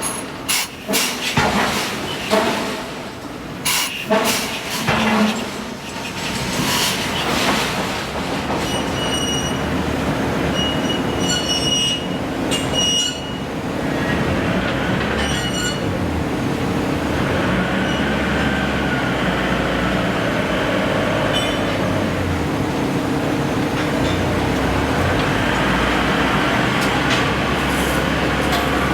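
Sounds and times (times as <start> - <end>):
machinery heavy hum: 0.0 - 28.9
high-pitched metallic squeals: 8.6 - 9.7, 10.5 - 13.4, 15.1 - 15.9.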